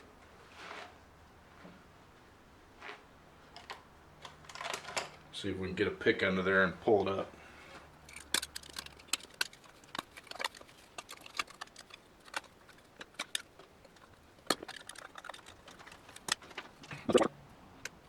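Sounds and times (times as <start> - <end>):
metal pick clicking and scraping: 8.0 - 18.0
metallic knocks clattering: 8.1 - 17.3.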